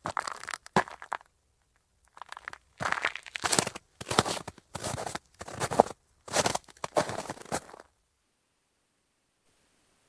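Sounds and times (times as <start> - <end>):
faint hiss: 8.3 - 10.0.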